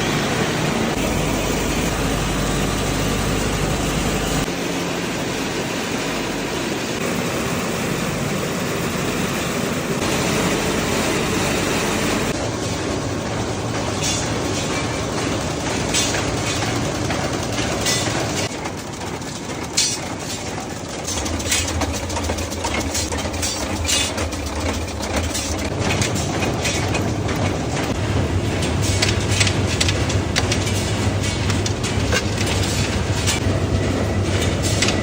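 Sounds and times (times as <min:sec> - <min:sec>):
low machinery hum: 0:00.0 - 0:35.0
rapid machinery clicks and clacks: 0:12.3 - 0:35.0.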